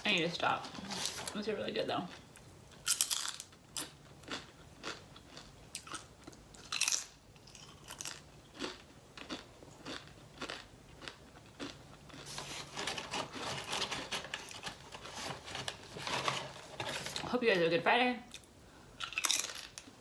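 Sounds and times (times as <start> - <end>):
tortilla chips crunching: 2.1 - 16.6, 19.0 - 19.9.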